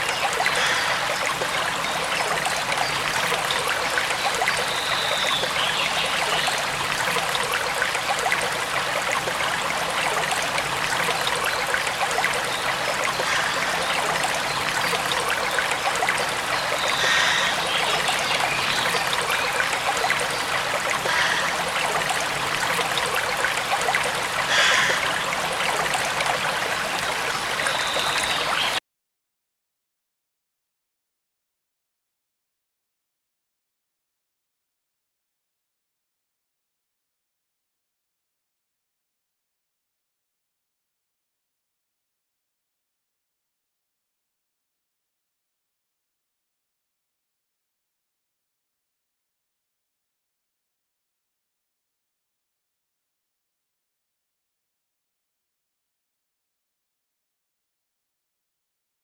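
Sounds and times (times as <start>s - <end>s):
stream water rushing: 0.0s - 28.8s.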